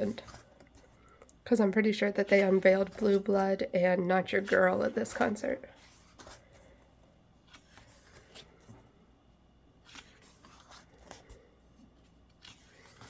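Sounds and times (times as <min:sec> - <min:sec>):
pages rustling and tapping: 0:00.0 - 0:03.5, 0:04.2 - 0:06.8, 0:09.8 - 0:13.0.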